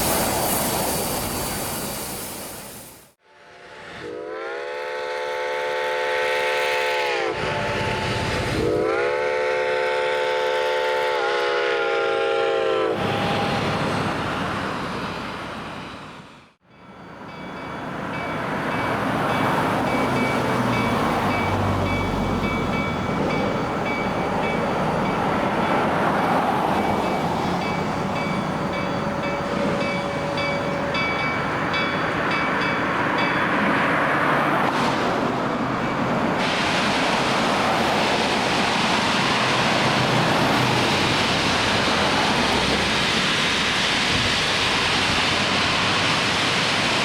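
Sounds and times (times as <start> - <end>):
train wheels on rail: 0.0 - 11.6, 12.9 - 47.0
steam whistle blasts: 3.2 - 13.9.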